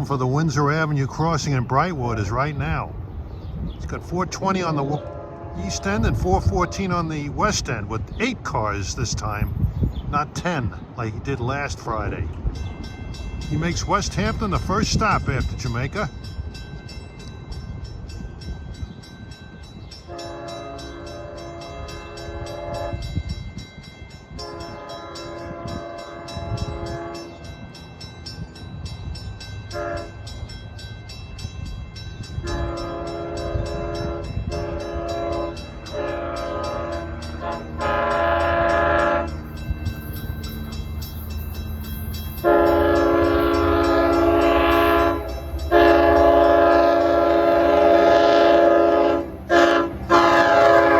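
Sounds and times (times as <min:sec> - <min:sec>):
low train rumble: 0:00.0 - 0:50.9
train air horn blasts: 0:04.9 - 0:07.0, 0:20.1 - 0:23.1, 0:24.4 - 0:27.4, 0:29.7 - 0:30.2, 0:32.4 - 0:39.4, 0:42.4 - 0:50.9.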